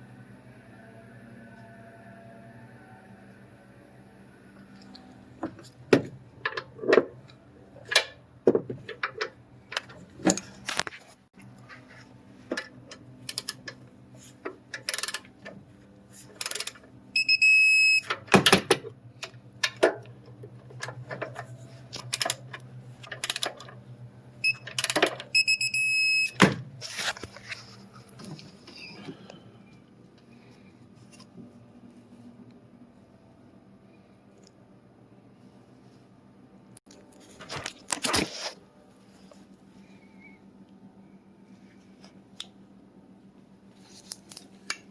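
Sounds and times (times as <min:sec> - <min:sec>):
electronic warning tone: 0:17.2 - 0:18.1.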